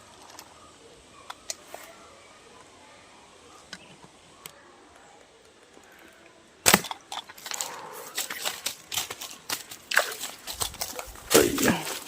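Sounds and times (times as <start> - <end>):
irregular cracks and knocks: 6.6 - 12.0.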